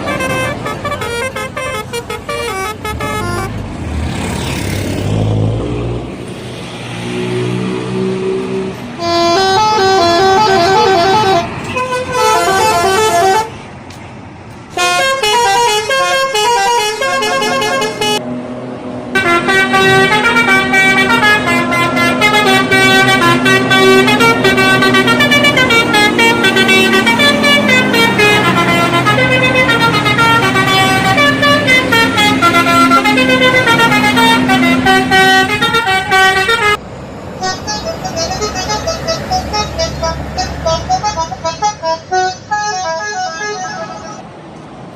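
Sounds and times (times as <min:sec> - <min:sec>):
multi-note bus air horns: 0:00.0 - 0:03.6, 0:08.5 - 0:13.6, 0:14.7 - 0:18.2, 0:19.2 - 0:36.8, 0:37.4 - 0:44.3.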